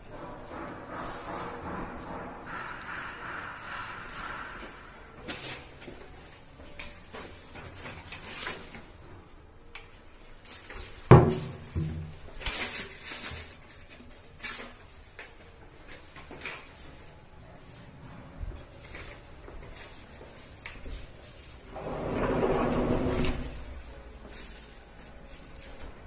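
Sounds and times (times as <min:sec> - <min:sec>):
cupboard doors opening and closing: 0:21.7 - 0:23.8.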